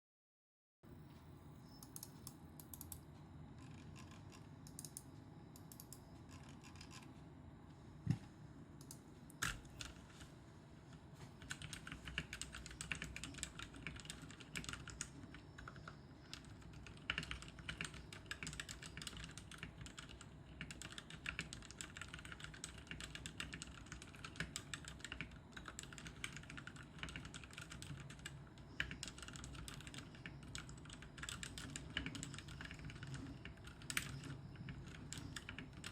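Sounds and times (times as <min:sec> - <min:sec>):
mechanical keyboard typing: 0:11.4 - 0:35.9.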